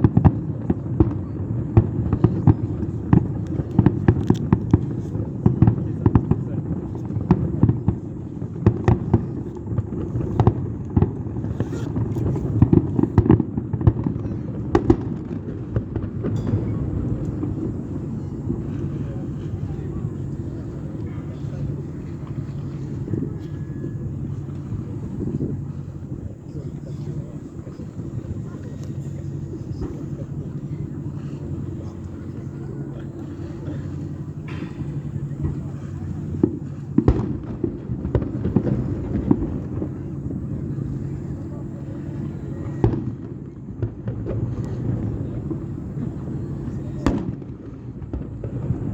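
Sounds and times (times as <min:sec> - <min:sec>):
fireworks bangs and crackles: 0:00.0 - 0:48.9
low background hum: 0:01.2 - 0:48.9
low rumble: 0:16.4 - 0:42.9.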